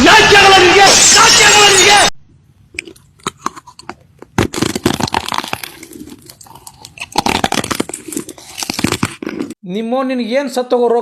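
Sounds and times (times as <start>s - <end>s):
crinkling and crackling: 2.8s - 9.6s.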